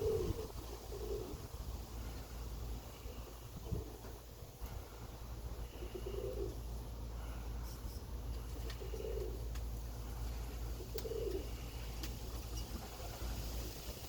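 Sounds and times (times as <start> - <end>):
pigeon cooing: 0.0 - 2.0, 2.9 - 4.2, 5.6 - 7.4, 8.4 - 14.0
wind rumble on microphone: 0.0 - 5.0.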